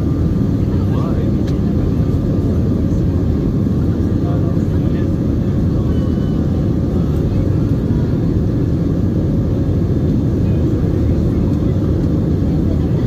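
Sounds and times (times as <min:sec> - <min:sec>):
airliner cabin engine rumble: 0:00.0 - 0:13.0.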